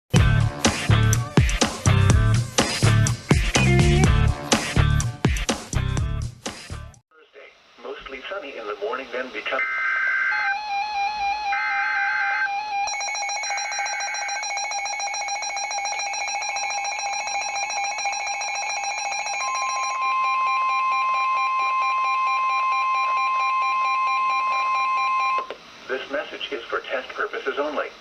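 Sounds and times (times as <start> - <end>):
steady warning alarm tone: 9.6 - 25.5
rapidly pulsing alarm beep: 12.5 - 25.4.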